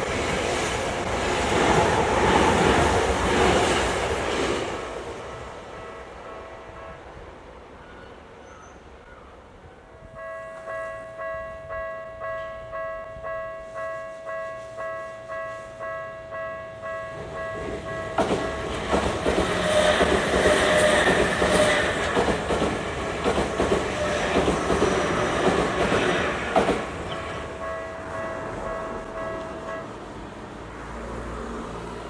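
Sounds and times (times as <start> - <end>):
train wheels clattering on rails: 0.0 - 5.2, 17.1 - 30.0
level crossing warning bell: 10.1 - 19.0, 27.1 - 30.2.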